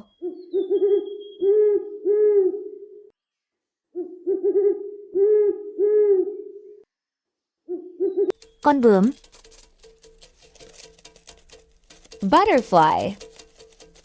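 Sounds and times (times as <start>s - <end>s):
owl hooting: 0.0s - 3.1s, 3.9s - 6.8s.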